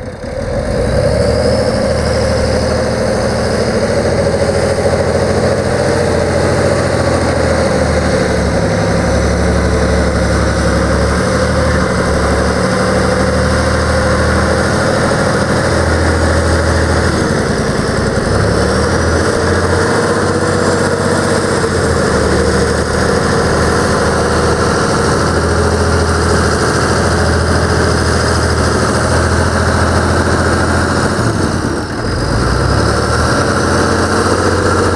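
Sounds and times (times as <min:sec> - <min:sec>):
diesel truck engine idling: 0:00.0 - 0:34.9.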